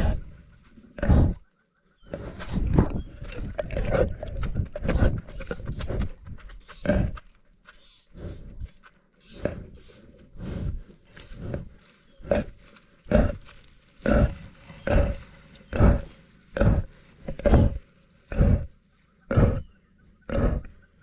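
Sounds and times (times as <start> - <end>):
lioness biting and licking camera: 2.1 - 18.7.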